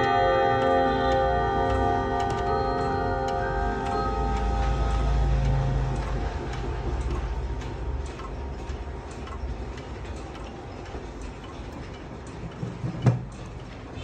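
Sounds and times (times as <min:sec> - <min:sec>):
low clock chime ringing: 0:00.0 - 0:09.5
pendulum clock ticking: 0:00.0 - 0:14.0.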